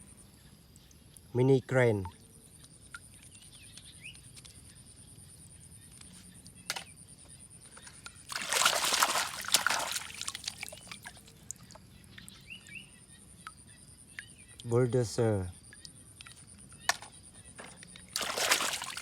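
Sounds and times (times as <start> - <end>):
water splashing: 8.3 - 11.8, 18.2 - 19.0.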